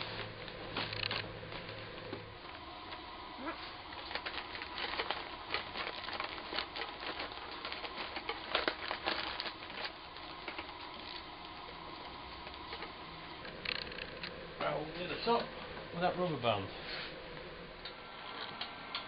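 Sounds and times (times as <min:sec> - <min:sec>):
paper bag crinkling: 0:03.4 - 0:14.2.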